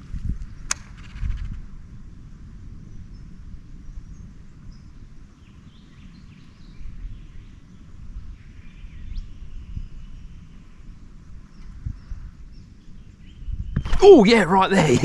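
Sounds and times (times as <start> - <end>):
birds chirping: 11.5 - 15.0.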